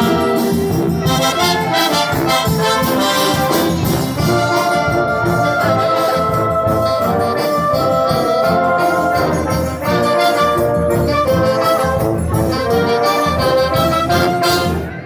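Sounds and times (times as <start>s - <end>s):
brass sustained chords: 0.0s - 15.0s
rhythmic bass line: 0.0s - 15.0s
wind band playing: 0.0s - 15.0s.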